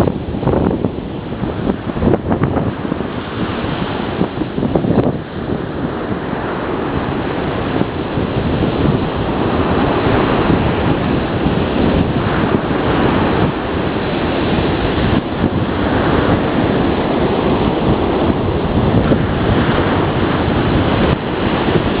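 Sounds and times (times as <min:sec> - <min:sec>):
surf washing: 0:00.0 - 0:22.0
wind buffeting microphone: 0:00.0 - 0:22.0.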